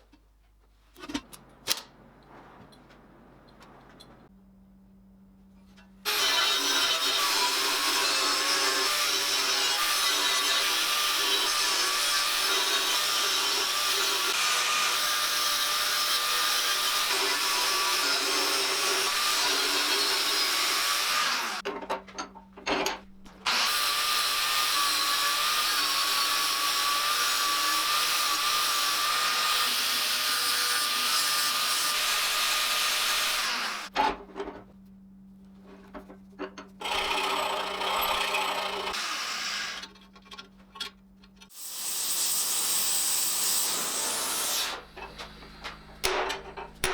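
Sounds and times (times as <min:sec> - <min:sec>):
low hum: 0:01.0 - 0:05.8
power tool grinding steel: 0:06.1 - 0:21.6, 0:23.5 - 0:33.9, 0:36.8 - 0:39.9, 0:41.5 - 0:46.8.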